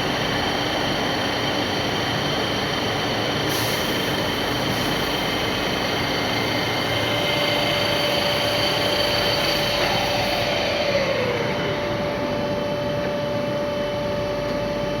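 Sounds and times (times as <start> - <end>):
milling machine running: 4.1 - 14.2.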